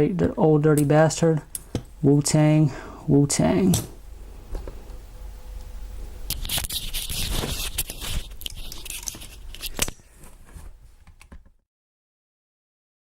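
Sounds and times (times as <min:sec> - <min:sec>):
handling clicks and scrapes: 0:06.3 - 0:11.3.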